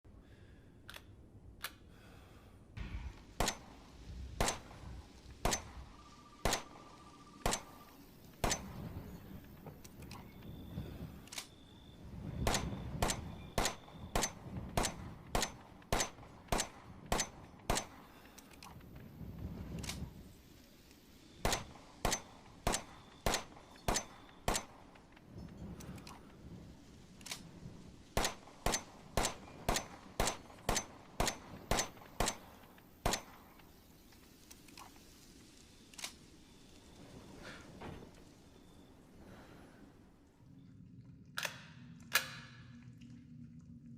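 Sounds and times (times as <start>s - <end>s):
pistol shots: 4.4s - 4.8s, 6.4s - 8.9s, 12.4s - 18.2s, 21.4s - 24.9s, 28.2s - 33.5s.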